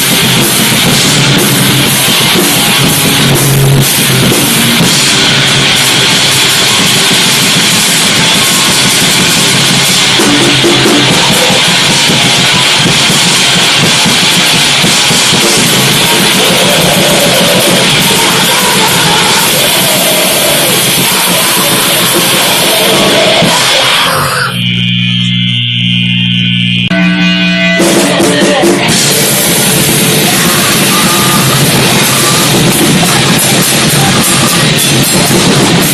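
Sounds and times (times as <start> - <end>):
distorted noise music: 0.0 - 35.9
steady droning tone: 20.8 - 28.2.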